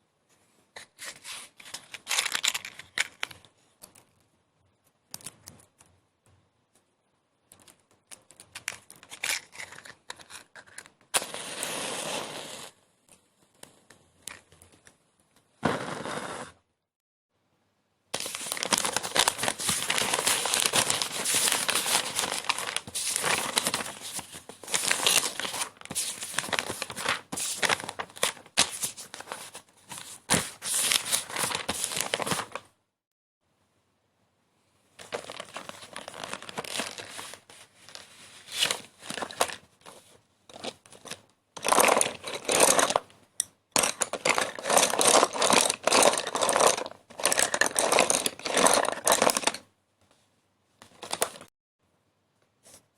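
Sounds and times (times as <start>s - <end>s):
crinkling and crumpling: 18.2s - 32.7s, 35.0s - 43.1s, 43.8s - 49.7s, 50.8s - 51.5s.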